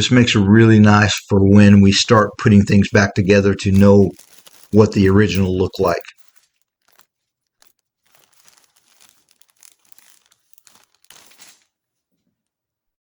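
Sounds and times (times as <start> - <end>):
plastic bag crinkling: 1.6 - 11.8.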